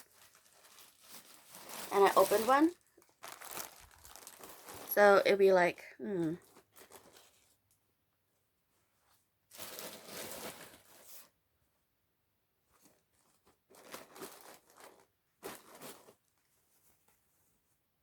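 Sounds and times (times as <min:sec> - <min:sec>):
plastic packaging crinkling: 0:00.0 - 0:05.5, 0:06.2 - 0:07.7, 0:09.5 - 0:11.3, 0:12.9 - 0:16.4.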